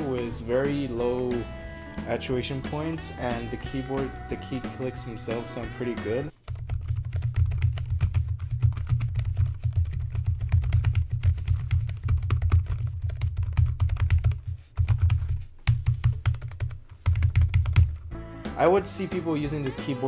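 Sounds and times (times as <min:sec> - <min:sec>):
fast typing on keyboard: 0:06.3 - 0:18.1.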